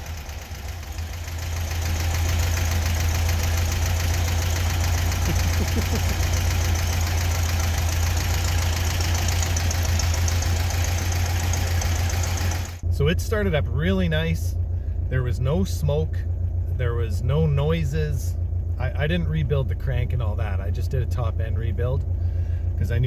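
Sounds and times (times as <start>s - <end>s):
car engine idling: 0.0s - 23.0s.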